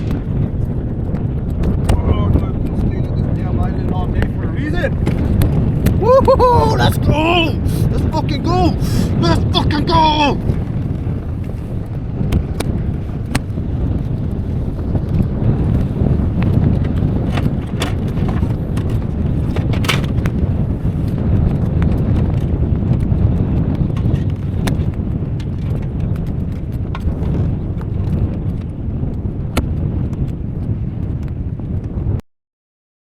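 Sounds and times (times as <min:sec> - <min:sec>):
wind buffeting microphone: 0:00.0 - 0:32.2
gear clicking and knocking: 0:16.4 - 0:20.6, 0:23.9 - 0:27.5.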